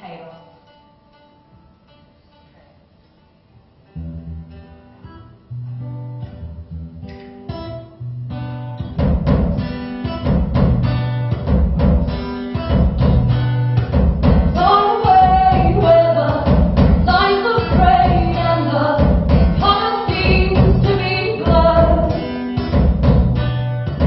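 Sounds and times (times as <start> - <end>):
strummed guitar: 0.4 - 24.0
steady low drum beat: 9.0 - 24.0
woman singing: 14.4 - 22.4.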